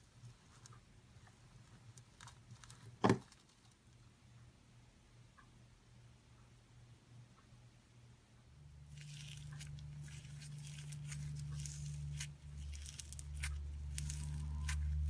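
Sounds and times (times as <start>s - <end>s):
low hum: 8.4s - 15.0s
slime crackling and popping: 8.9s - 15.0s.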